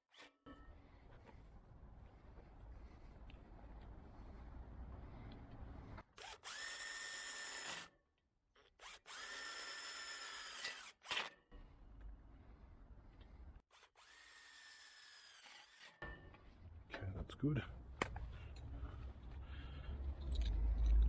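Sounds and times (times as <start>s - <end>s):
cordless drill whining: 6.2s - 7.9s, 8.8s - 11.3s.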